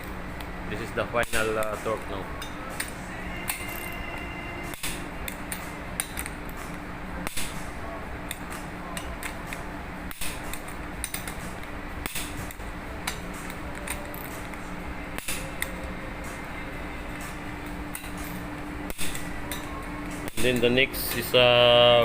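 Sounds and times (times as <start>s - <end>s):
steady machinery hum: 0.0s - 22.0s.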